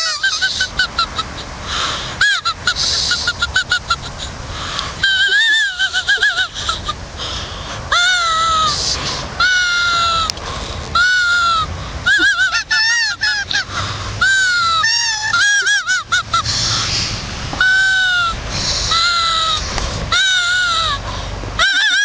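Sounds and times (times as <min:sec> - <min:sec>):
grass blade whistles squawking: 0:02.2 - 0:04.3, 0:14.2 - 0:21.0.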